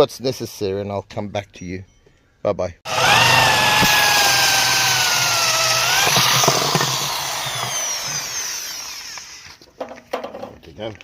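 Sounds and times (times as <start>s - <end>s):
drill clicks: 2.9s - 9.6s
power drill whining: 2.9s - 9.6s.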